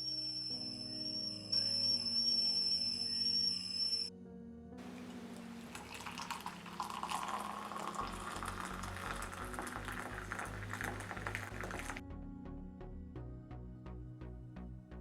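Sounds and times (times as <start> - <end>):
soft background music: 0.0 - 15.0
liquid splashing and bubbling: 4.8 - 12.0.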